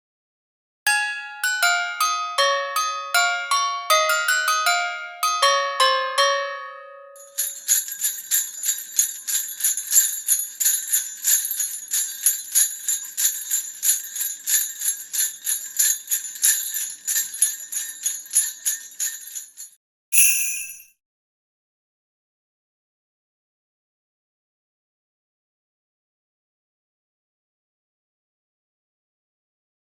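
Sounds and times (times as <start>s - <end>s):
bell-like chime melody: 0.9s - 8.9s, 20.2s - 20.9s
jingle bells shaken: 1.6s - 20.9s.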